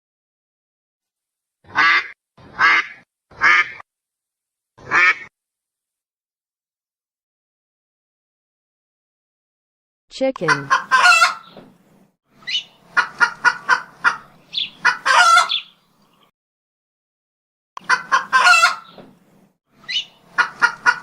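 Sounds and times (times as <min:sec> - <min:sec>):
chicken clucking: 0:10.4 - 0:11.6, 0:12.5 - 0:15.7, 0:17.8 - 0:19.0, 0:19.9 - 0:21.0.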